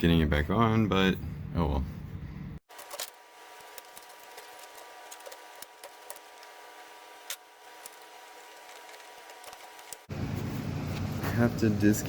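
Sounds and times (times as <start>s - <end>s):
steady low hum: 3.2s - 12.0s.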